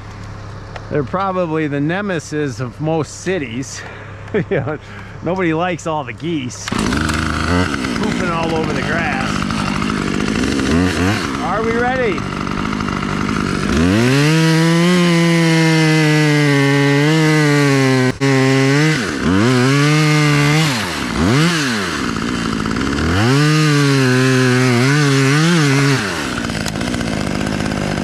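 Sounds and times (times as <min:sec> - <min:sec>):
chainsaw cutting wood: 0:06.2 - 0:28.0.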